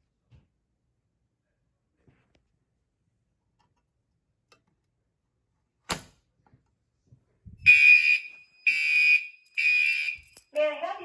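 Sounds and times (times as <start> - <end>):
fire alarm horn tone: 7.6 - 10.4.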